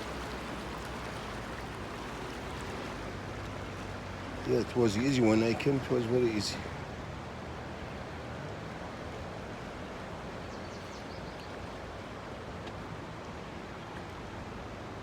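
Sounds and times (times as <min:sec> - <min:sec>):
river water rushing: 0:00.0 - 0:15.0
faint light ticks: 0:12.6 - 0:13.4.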